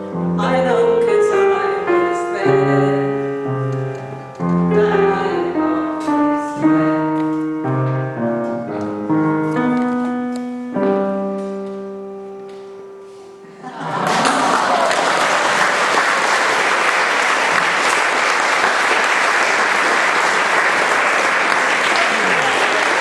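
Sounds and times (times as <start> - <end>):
slow piano chords: 0.0 - 22.4.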